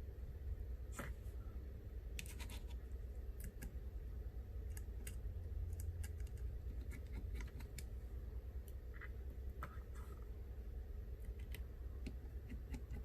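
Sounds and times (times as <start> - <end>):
steady low hum: 0.0 - 13.0
light clicks and taps of small tools: 11.2 - 13.0.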